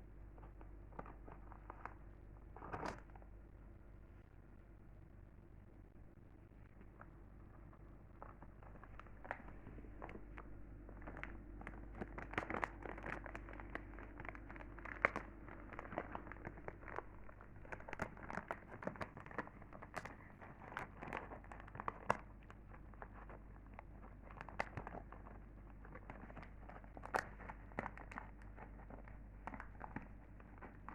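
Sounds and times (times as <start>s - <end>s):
crisp crackles of potato chips: 8.1s - 30.9s.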